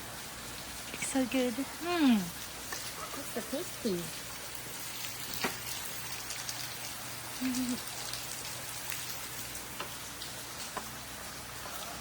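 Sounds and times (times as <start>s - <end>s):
rushing hiss of water: 0.0s - 12.0s.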